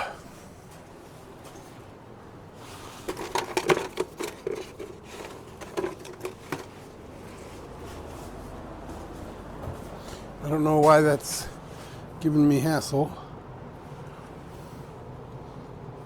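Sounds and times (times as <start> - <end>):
plastic parts clicking and knocking: 3.0 - 6.8.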